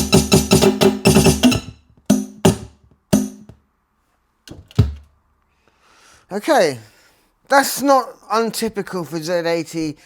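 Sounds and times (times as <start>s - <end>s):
drum machine percussive hits: 0.0s - 3.6s.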